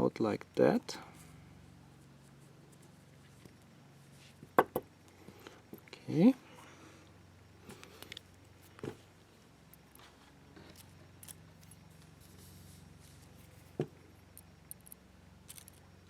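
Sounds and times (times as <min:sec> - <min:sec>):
faint low hum: 0:00.0 - 0:16.0
lock parts clicking: 0:14.4 - 0:15.8.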